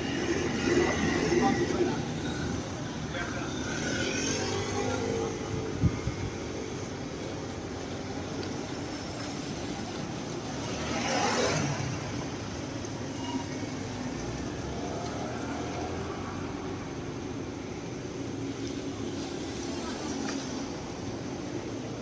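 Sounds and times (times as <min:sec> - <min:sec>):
traffic hum: 0:00.0 - 0:22.0
vehicle passing by: 0:10.5 - 0:12.5.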